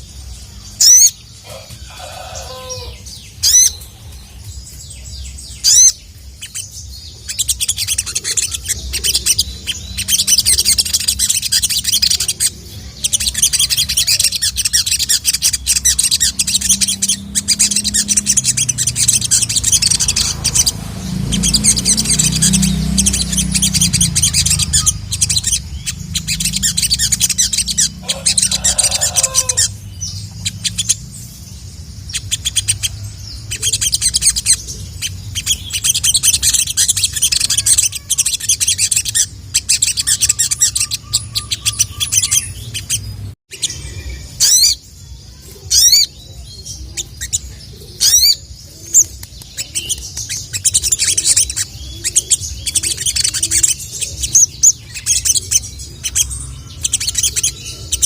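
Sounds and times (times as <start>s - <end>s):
bird twittering trills: 0.0s - 58.0s.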